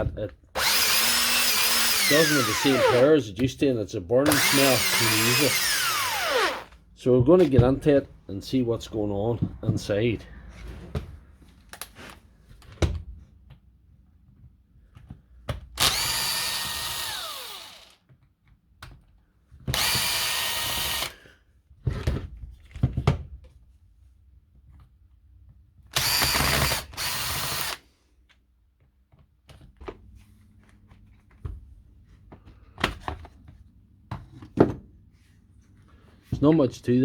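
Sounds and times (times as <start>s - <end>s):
electric power tool motor: 0.6s - 3.1s, 4.3s - 6.8s, 15.8s - 18.0s, 19.7s - 21.2s, 26.0s - 27.8s.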